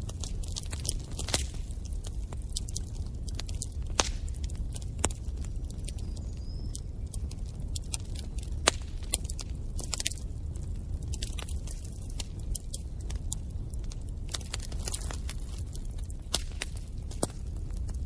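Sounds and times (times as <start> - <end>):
low rumble of flames: 0.0 - 18.0
wood fire crackling: 0.0 - 18.0.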